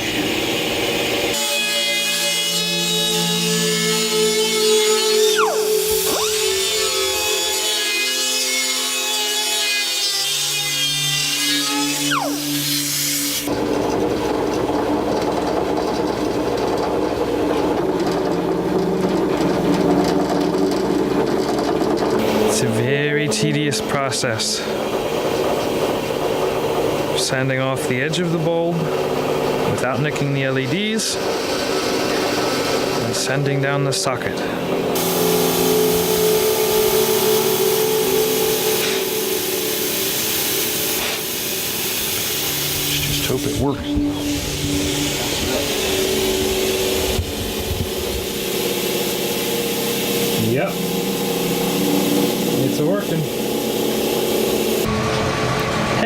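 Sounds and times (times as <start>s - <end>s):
power tool grinding: 0.0s - 23.6s, 28.4s - 56.0s
rotary tool grinding: 2.6s - 13.5s, 31.2s - 33.1s.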